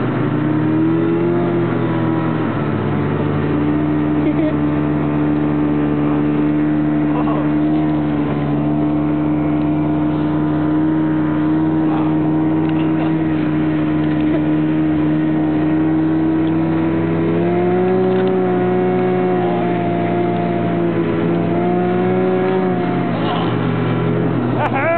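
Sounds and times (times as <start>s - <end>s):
snowmobile engine running: 0.0s - 24.9s.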